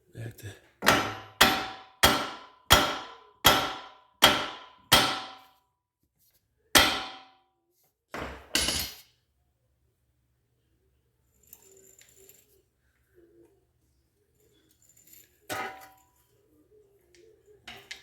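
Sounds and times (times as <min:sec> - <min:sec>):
hammer striking metal: 0:00.8 - 0:05.5, 0:06.8 - 0:07.3.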